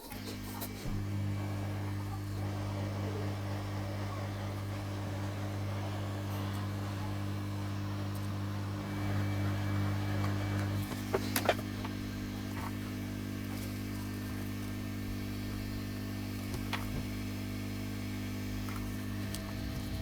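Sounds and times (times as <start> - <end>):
electrical hum: 0.0 - 20.0.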